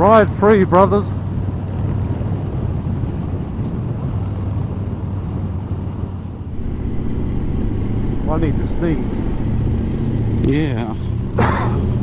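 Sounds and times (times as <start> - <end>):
motorcycle engine hum: 0.0 - 12.0
wind and road rush: 0.0 - 12.0.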